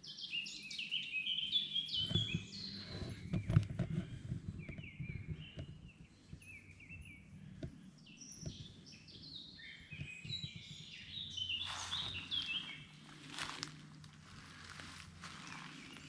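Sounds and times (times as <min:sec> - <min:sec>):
songbirds singing: 0:00.0 - 0:16.0
footsteps crunching on path: 0:11.6 - 0:16.0.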